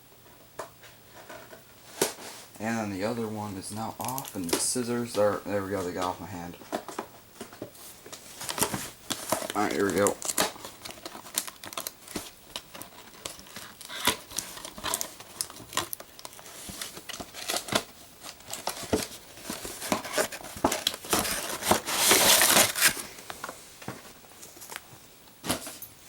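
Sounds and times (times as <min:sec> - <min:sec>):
toy packaging crinkling: 0:04.0 - 0:04.8, 0:08.4 - 0:23.1.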